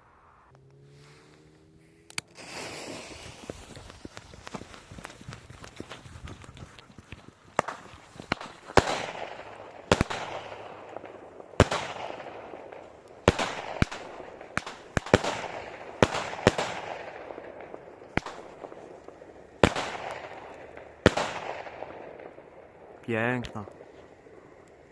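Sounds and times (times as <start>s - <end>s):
firework shell bursts: 1.9s - 5.4s
firework pops: 2.1s - 22.4s.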